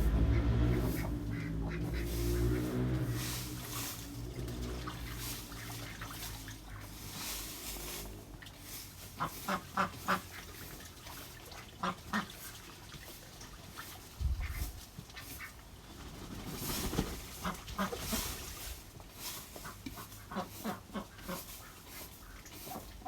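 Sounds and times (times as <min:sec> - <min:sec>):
ducks quacking: 0:00.0 - 0:07.2, 0:09.0 - 0:10.9, 0:11.6 - 0:12.5, 0:14.3 - 0:15.6, 0:17.3 - 0:18.4, 0:19.5 - 0:23.0.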